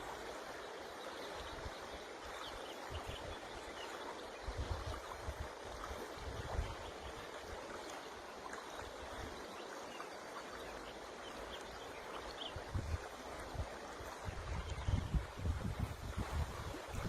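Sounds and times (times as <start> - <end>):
river water rushing: 0.0 - 17.0
wind buffeting microphone: 4.4 - 6.9, 12.5 - 17.0.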